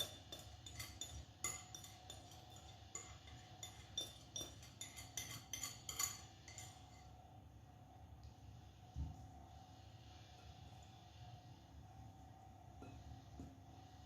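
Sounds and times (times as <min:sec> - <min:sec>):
utensil clinking against mixing bowl: 0:00.0 - 0:07.1.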